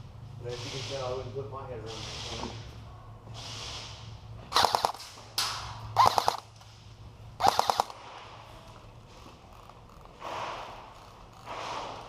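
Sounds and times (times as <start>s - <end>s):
airsoft guns firing bursts: 4.5s - 5.2s, 6.0s - 6.5s, 7.4s - 8.1s.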